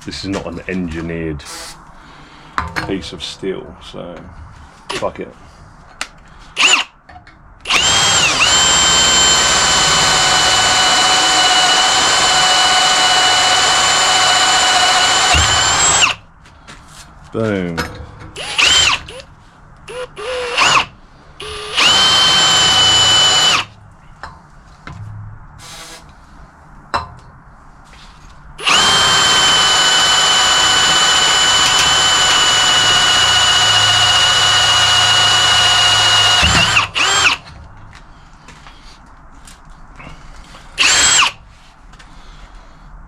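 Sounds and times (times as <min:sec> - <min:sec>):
electric drill boring through steel: 0:06.6 - 0:06.9, 0:07.7 - 0:16.2, 0:18.4 - 0:19.3, 0:19.9 - 0:23.7, 0:28.6 - 0:37.5, 0:40.8 - 0:41.4.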